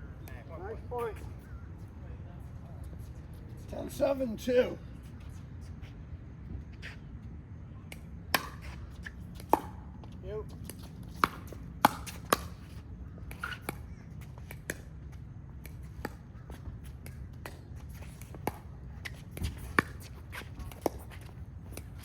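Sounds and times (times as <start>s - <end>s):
low background hum: 0.0s - 22.0s.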